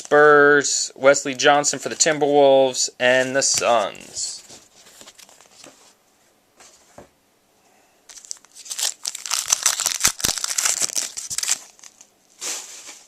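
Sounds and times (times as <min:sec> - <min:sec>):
foil pack tearing and crinkling: 0:08.1 - 0:13.0.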